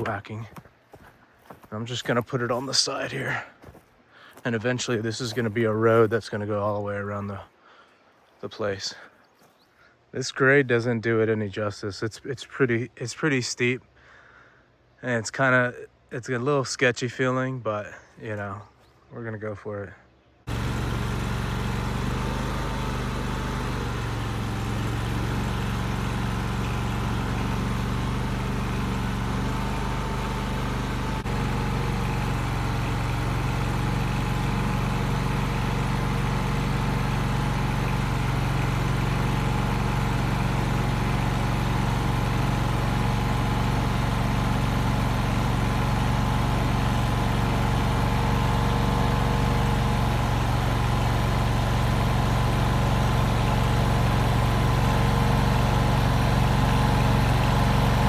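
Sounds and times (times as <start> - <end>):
skid steer engine running: 0.0 - 6.2, 20.5 - 58.0.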